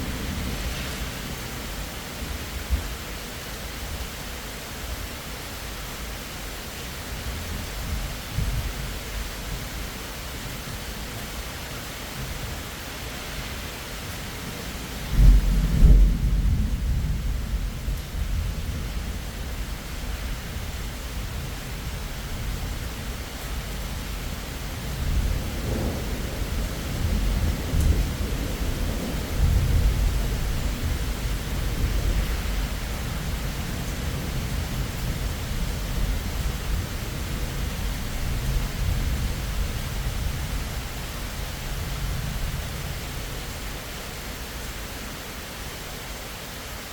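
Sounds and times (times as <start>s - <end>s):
steady rain: 0.0s - 46.9s
deep thunder rumbling: 15.1s - 19.7s, 24.8s - 43.4s.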